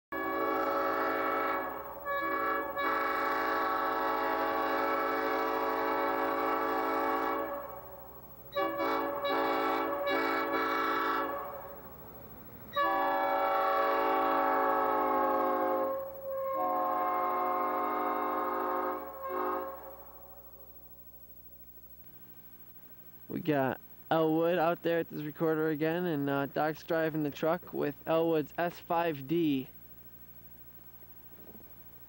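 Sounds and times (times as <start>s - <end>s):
train air horn blasts: 0.1s - 11.9s, 12.7s - 20.7s.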